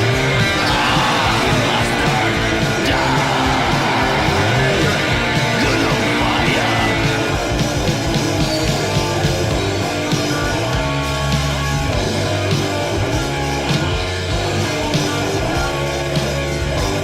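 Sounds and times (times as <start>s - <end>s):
bass and drums: 0.0s - 17.0s
distorted electric guitar riffing: 0.0s - 17.0s.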